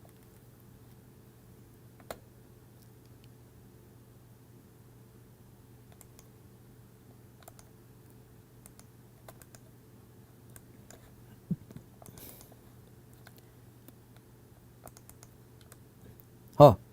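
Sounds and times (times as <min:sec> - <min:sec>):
low electrical hum: 0:00.0 - 0:16.9
keyboard and mouse clicks: 0:05.9 - 0:06.3, 0:07.4 - 0:07.7, 0:08.6 - 0:09.7, 0:10.5 - 0:12.6, 0:14.8 - 0:15.8.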